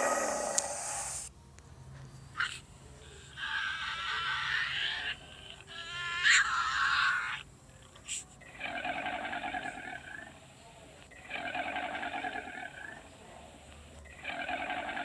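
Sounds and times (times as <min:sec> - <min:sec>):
farm animal calling: 0:03.2 - 0:07.4.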